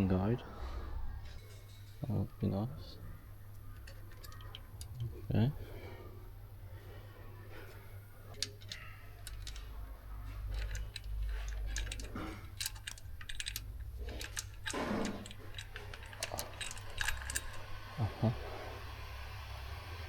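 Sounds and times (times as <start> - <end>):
steady low hum: 0.0 - 20.0
tools and small parts clicking: 3.5 - 5.2, 7.5 - 18.0.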